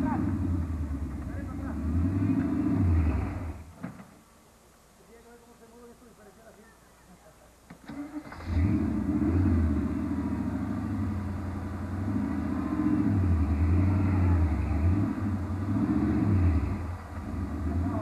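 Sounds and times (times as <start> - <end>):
engine revving hard: 1.6 - 3.6, 7.9 - 18.0.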